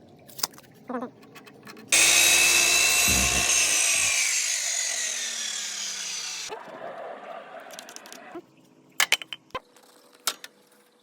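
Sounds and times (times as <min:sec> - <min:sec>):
electric power saw winding down: 0:02.0 - 0:06.5.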